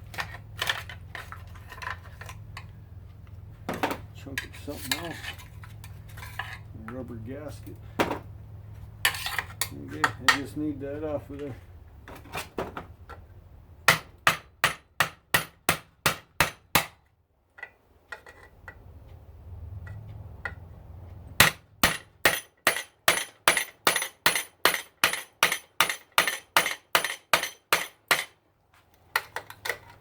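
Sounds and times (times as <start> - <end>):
hammer striking metal: 13.9 - 17.0, 21.4 - 28.4.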